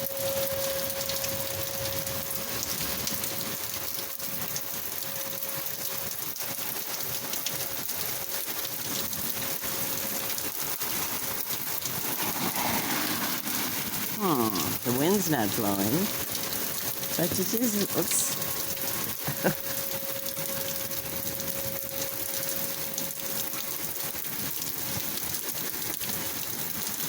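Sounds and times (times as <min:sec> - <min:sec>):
warning siren steady tone: 0:00.0 - 0:08.5, 0:14.2 - 0:24.6
hard rain falling: 0:00.0 - 0:27.0.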